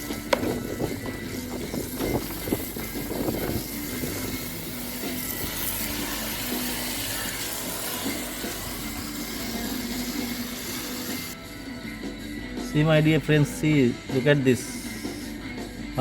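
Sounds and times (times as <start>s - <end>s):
water spraying from a hose: 0.0s - 11.4s.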